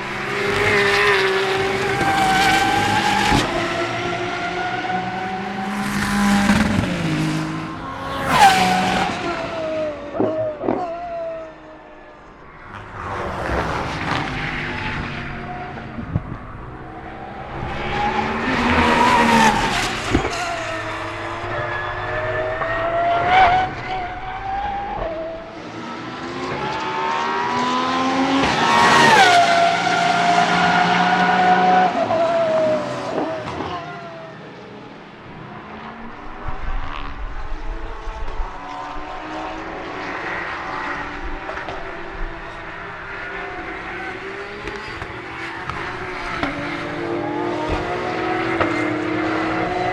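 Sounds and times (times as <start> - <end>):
race car engine revving: 0.0 - 10.8.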